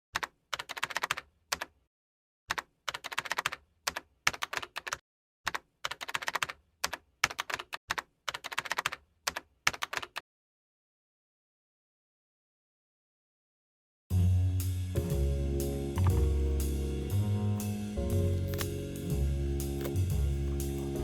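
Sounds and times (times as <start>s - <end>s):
keyboard typing clicks: 18.4s - 18.8s.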